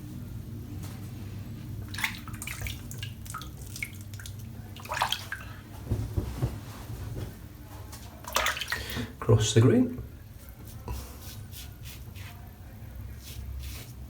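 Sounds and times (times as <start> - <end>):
low steady hum: 0.0 - 14.0
water splashing at a sink: 1.8 - 6.0, 8.1 - 9.2.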